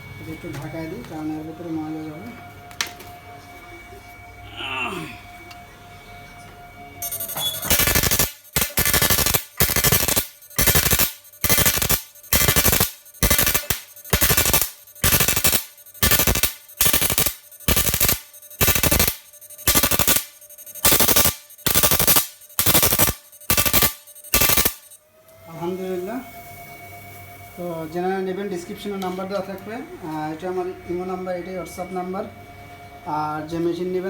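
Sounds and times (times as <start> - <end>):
harsh electric buzzing pulses: 6.8 - 34.0.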